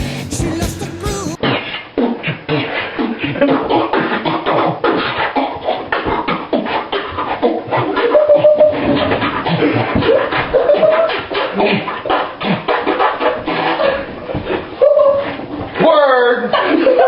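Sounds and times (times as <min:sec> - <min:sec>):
beatboxing: 0:00.0 - 0:11.8.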